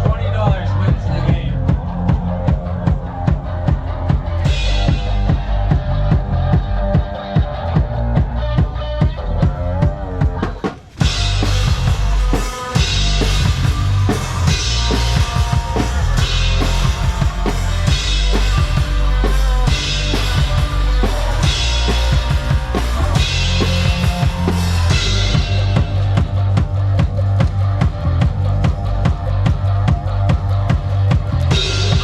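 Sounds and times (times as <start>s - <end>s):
heavy bass line: 0.0s - 32.0s
kick and snare drums: 9.9s - 32.0s.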